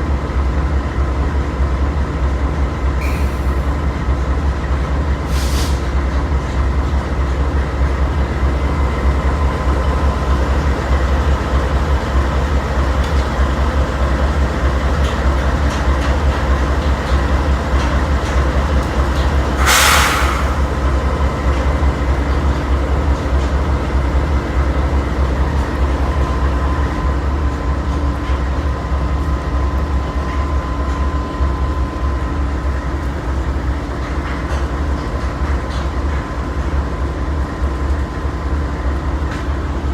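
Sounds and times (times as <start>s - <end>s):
short loud hiss: 19.6s - 20.7s.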